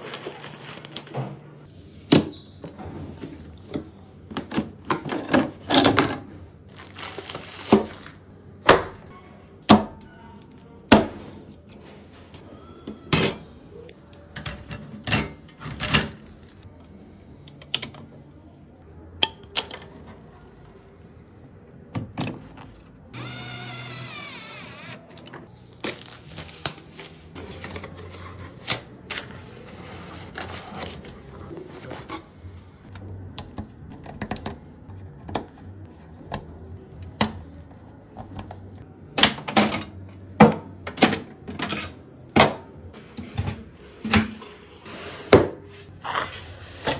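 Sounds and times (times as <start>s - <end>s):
whirring rasping noise: 23.2s - 25.2s.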